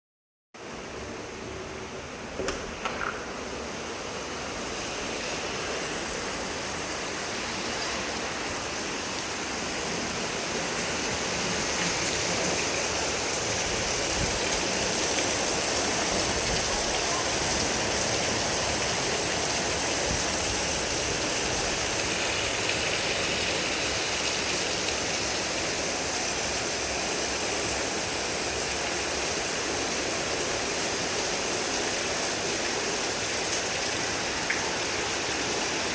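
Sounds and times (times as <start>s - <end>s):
heavy rain: 0.6s - 35.9s.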